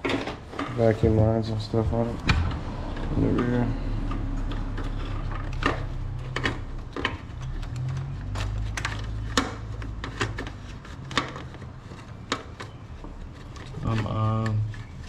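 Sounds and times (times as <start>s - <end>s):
steady low hum: 0.8s - 8.2s.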